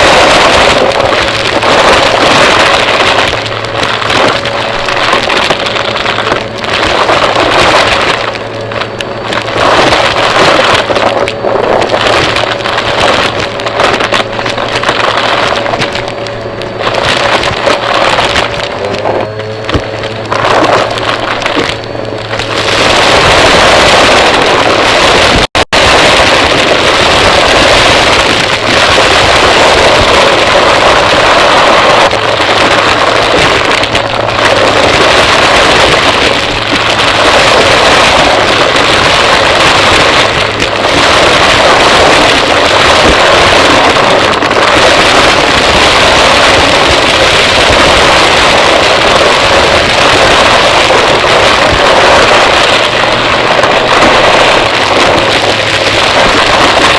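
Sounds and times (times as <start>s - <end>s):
vacuum cleaner running: 15.5s - 25.4s.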